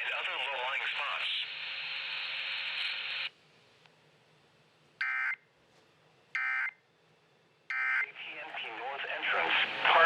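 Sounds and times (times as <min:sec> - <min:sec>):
radio hiss: 0:00.0 - 0:03.3, 0:08.0 - 0:10.0.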